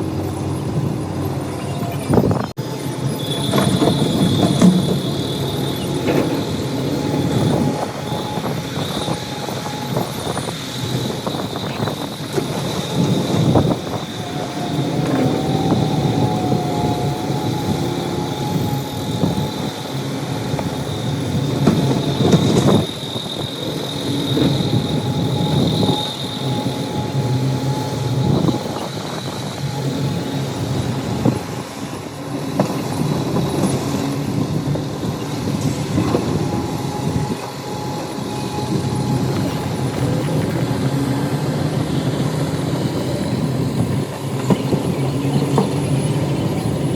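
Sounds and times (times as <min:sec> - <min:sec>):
excavator engine running: 0:00.0 - 0:46.9
high whine: 0:00.0 - 0:46.9.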